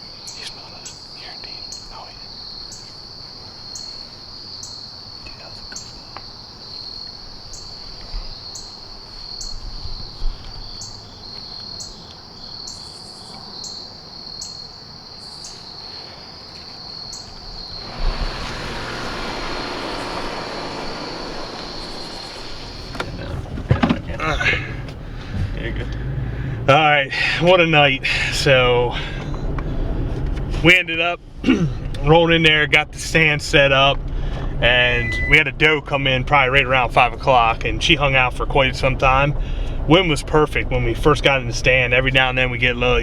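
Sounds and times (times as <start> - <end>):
crickets trilling: 0.0 - 23.6
passing vehicle rushing: 17.6 - 26.7.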